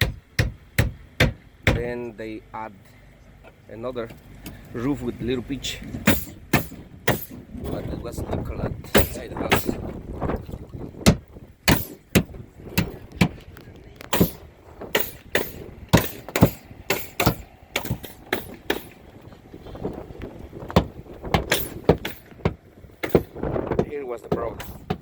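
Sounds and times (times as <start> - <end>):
sharp knocks and thumps: 0.0 - 2.0, 5.9 - 19.1, 20.6 - 25.0
low background rumble: 0.0 - 25.0.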